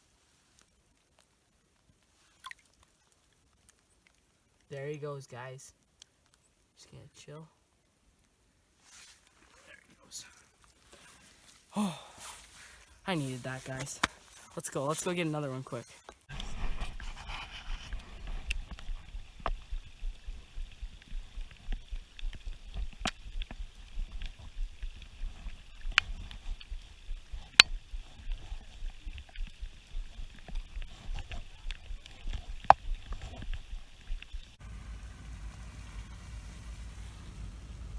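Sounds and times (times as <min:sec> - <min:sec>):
wind rumbling on microphone: 0:34.6 - 0:37.9.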